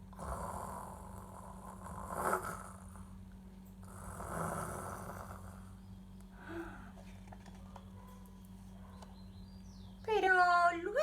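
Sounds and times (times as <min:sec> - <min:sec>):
person imitating dog snoring: 0:00.1 - 0:03.1, 0:03.8 - 0:05.8.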